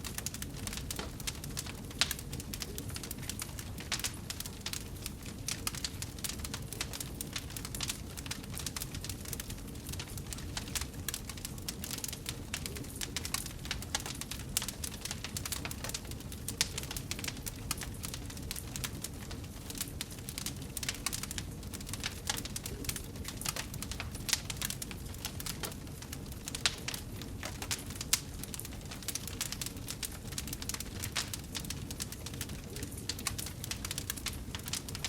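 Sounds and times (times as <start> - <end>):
low rumble of flames: 0.0 - 35.0
wood fire crackling: 0.0 - 35.0.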